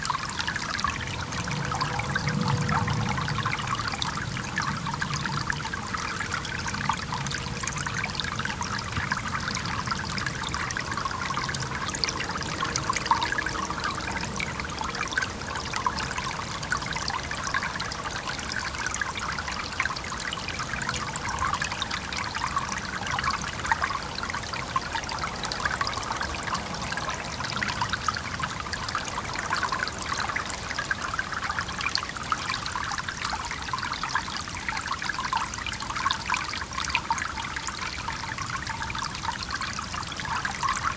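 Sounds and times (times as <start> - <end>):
stream babbling over stones: 0.0 - 40.9
distant traffic rumble: 0.5 - 19.6.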